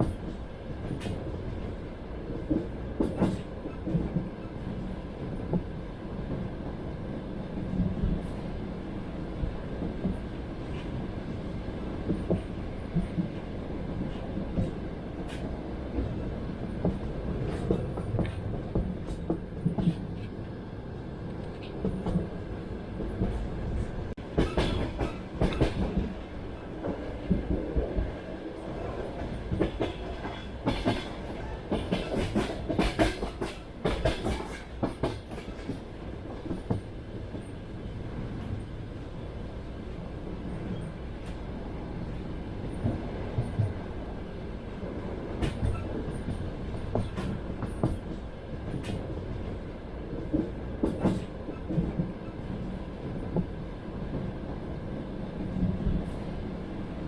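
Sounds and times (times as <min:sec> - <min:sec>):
train rumble: 0:00.0 - 0:57.0
wheels clicking over rail joints: 0:24.3 - 0:28.1.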